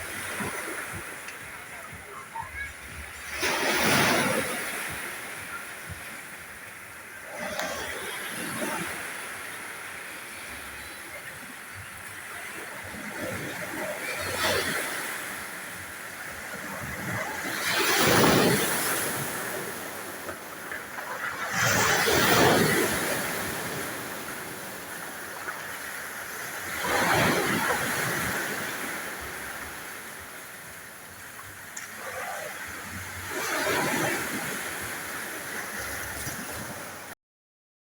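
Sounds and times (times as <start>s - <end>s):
sea waves crashing: 0.0s - 37.2s.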